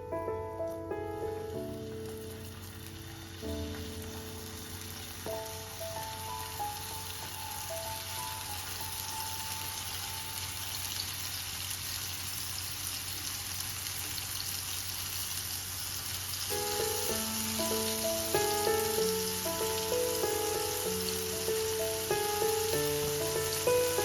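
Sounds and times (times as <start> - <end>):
soft instrumental music: 0.0 - 10.9, 16.5 - 24.0
food sizzling in hot pan: 0.6 - 24.0.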